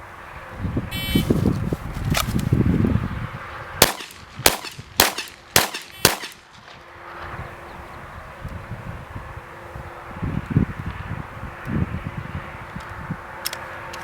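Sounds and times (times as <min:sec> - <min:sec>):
pistol shots: 0:03.8 - 0:06.4.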